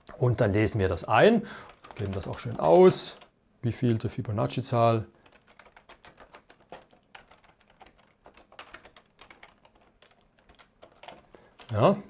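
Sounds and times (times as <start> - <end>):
typing on computer keyboard: 1.5 - 3.3, 5.2 - 11.9.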